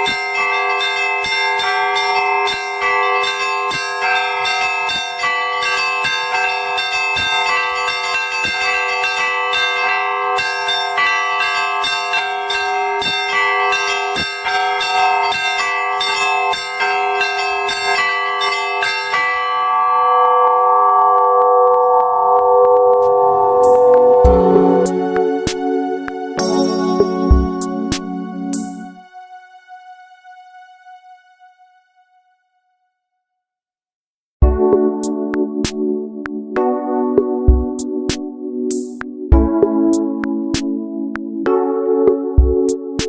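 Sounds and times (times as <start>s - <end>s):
church bells pealing: 0.0s - 29.2s.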